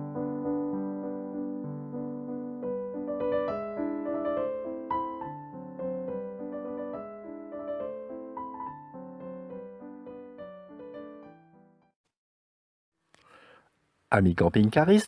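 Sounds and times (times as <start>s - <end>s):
gentle piano music: 0.0s - 12.0s.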